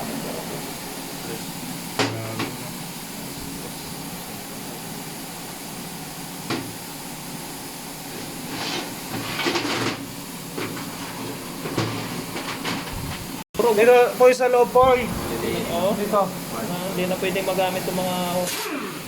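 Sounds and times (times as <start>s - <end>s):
workshop hum and hiss: 0.0s - 19.0s.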